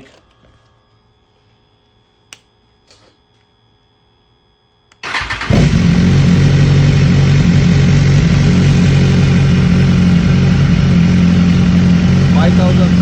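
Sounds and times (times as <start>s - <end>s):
motorcycle starter cranking: 5.0s - 5.8s
motorcycle engine idling: 5.1s - 13.0s.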